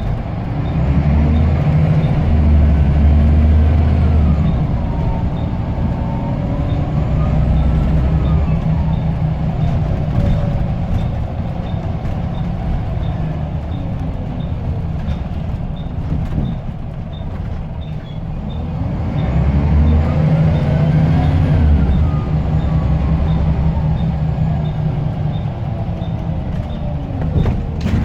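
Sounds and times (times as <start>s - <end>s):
bus diesel engine running: 0.0s - 28.0s.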